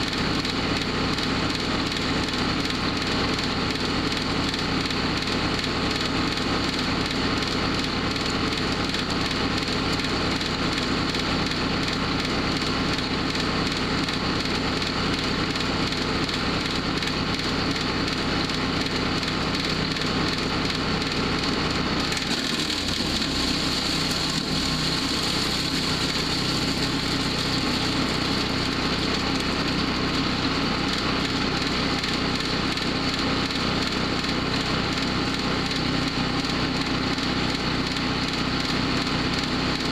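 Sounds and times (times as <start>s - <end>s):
wood chipper running: 0.0s - 39.9s
wood crackling and splintering: 22.2s - 29.5s.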